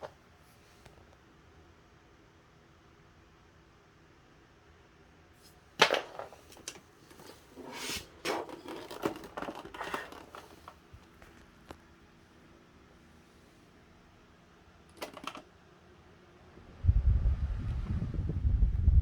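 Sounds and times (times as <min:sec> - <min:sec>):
fan parts clicking and clattering: 0:00.0 - 0:00.2, 0:05.8 - 0:11.8, 0:14.8 - 0:15.6
faint steady hum: 0:00.0 - 0:19.0.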